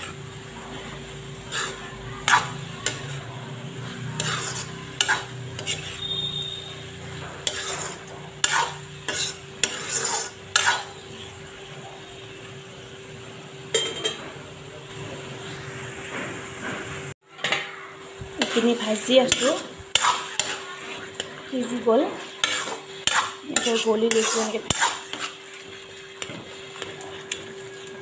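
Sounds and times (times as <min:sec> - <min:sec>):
spatula scraping metal pan: 0:00.0 - 0:11.3, 0:18.4 - 0:28.0
food sizzling in oil: 0:00.0 - 0:17.2, 0:17.8 - 0:28.0.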